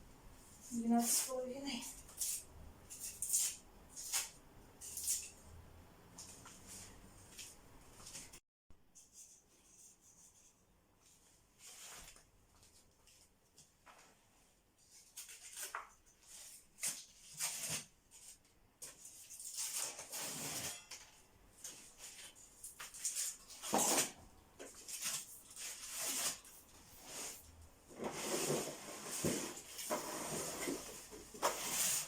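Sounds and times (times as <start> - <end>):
wallpaper tearing and scraping: 0.8 - 5.4, 15.0 - 32.0.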